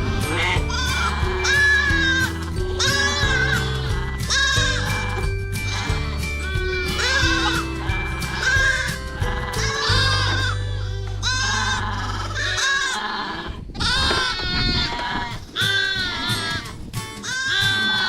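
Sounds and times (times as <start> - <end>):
background music: 0.0 - 12.6
lambs bleating: 0.0 - 18.0.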